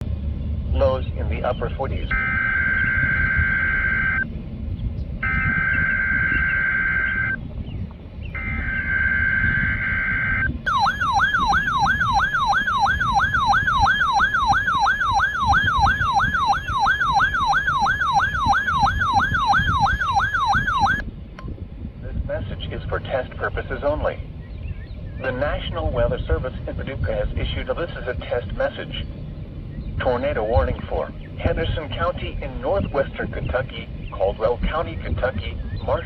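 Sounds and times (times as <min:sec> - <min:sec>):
screechy digital data bursts: 0:08.4 - 0:21.0
sweeping alert tone: 0:08.4 - 0:21.0.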